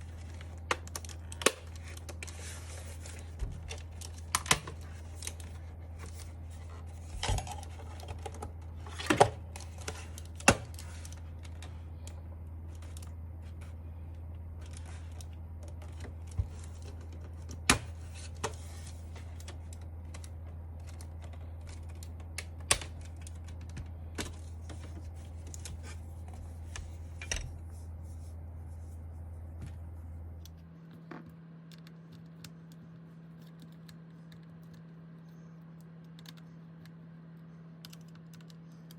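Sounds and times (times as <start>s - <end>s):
plastic parts clicking and knocking: 0.0s - 13.1s
steady low hum: 0.0s - 38.9s.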